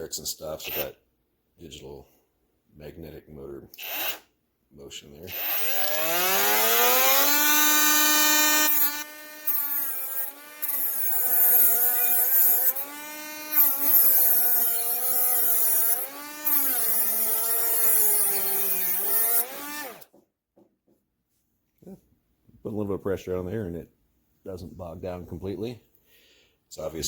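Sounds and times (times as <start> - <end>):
grinder whining: 3.8 - 4.2, 5.2 - 20.1.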